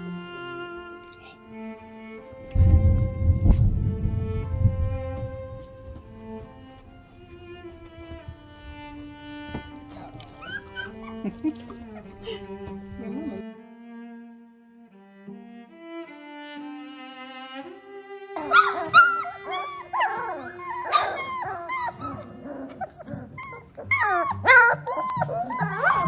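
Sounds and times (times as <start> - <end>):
soft music with held notes: 0.0 - 26.0
puppy squeaking and whining: 8.9 - 13.2, 18.5 - 26.0.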